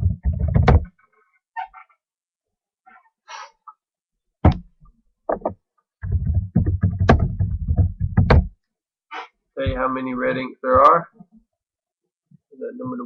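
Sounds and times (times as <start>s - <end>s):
dull thuds and clicks: 0.0s - 1.0s, 4.4s - 8.6s, 9.6s - 11.4s.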